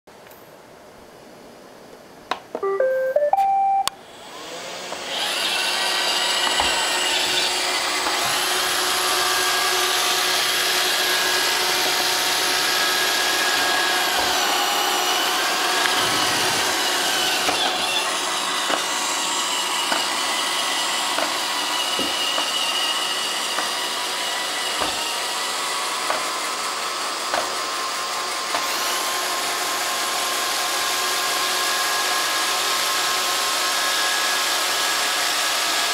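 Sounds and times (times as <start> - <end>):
robot vacuum start-up chime: 2.6 - 3.9
robot vacuum motors whirring: 4.0 - 29.8.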